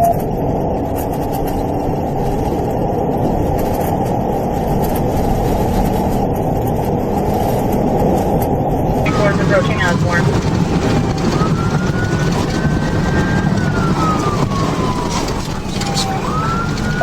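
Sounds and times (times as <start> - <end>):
road and engine rumble in car: 9.0 - 17.0.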